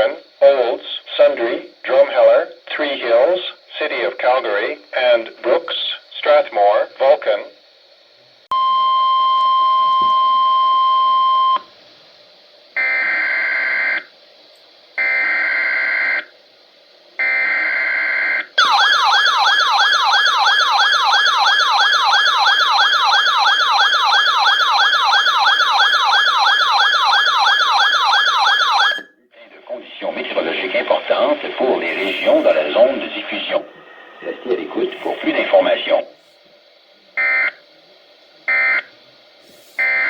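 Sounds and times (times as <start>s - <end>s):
warbling siren alarm: 15.0s - 16.3s, 17.2s - 29.2s.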